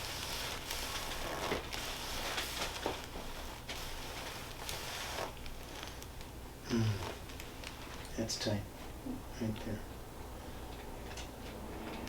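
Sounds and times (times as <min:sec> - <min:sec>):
low room hum: 0:00.0 - 0:12.0.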